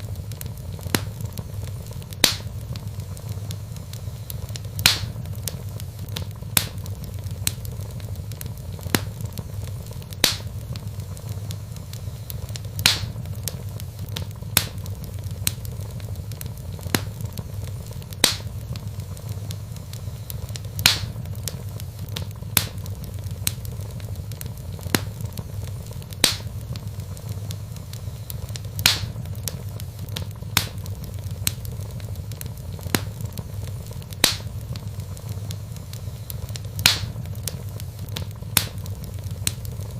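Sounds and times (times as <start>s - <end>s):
log fire crackling: 0.0s - 39.9s
low steady rumble: 0.0s - 39.9s.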